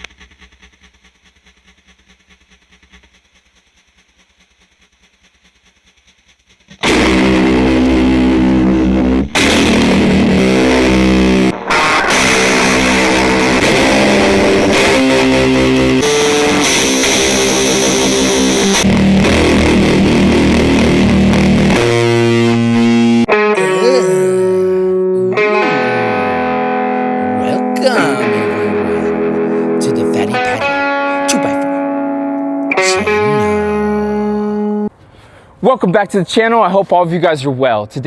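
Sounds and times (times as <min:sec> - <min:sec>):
fuzzed electric guitar: 0:05.6 - 0:34.9.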